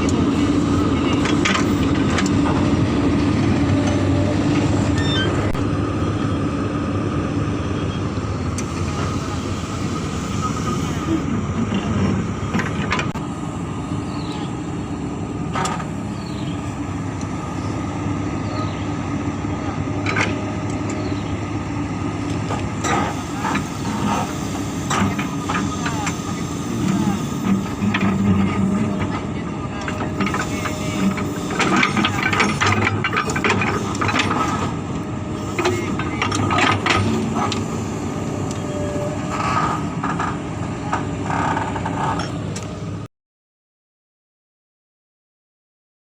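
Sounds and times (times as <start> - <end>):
diesel engine running: 0.0 - 43.1.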